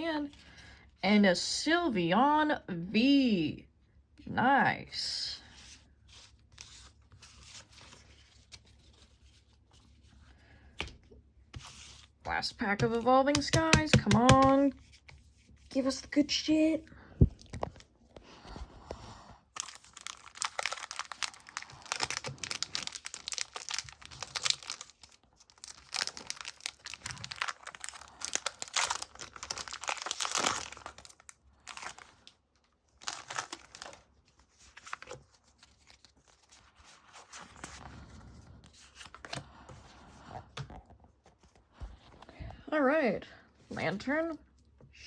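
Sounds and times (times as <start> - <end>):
foil wrapper tearing and crinkling: 19.6 - 34.1.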